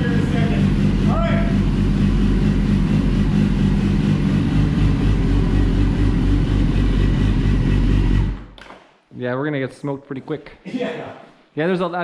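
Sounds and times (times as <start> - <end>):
motorcycle engine idling: 0.0 - 8.4.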